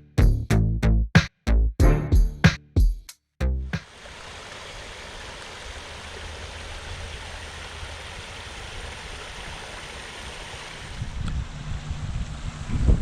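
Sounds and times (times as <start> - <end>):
creek water flowing: 3.8 - 11.0.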